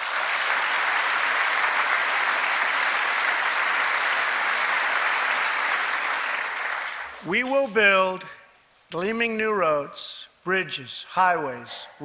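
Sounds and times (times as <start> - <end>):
audience applause: 0.0 - 7.3.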